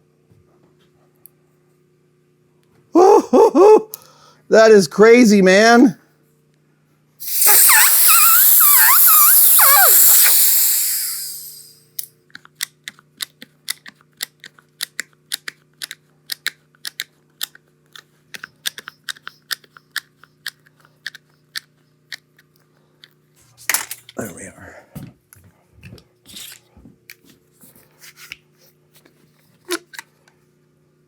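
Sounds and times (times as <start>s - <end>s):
air hissing out of tire: 7.2s - 11.8s.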